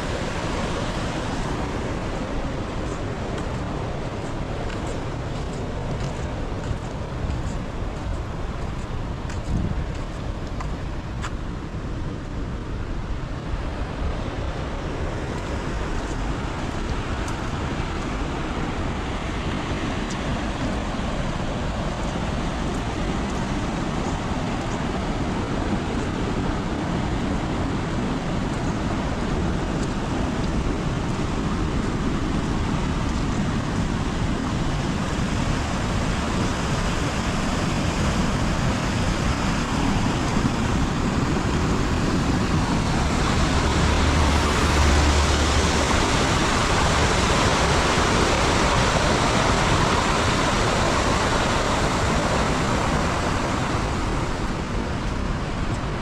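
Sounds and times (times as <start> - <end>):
heavy rain falling: 28.4 - 55.8.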